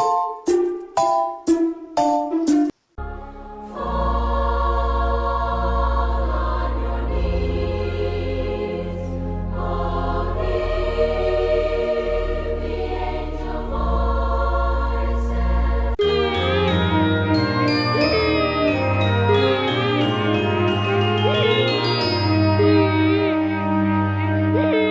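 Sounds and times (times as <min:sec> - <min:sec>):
choir singing sustained chords: 0:03.0 - 0:24.9
chiming bell-like tune: 0:16.0 - 0:23.5.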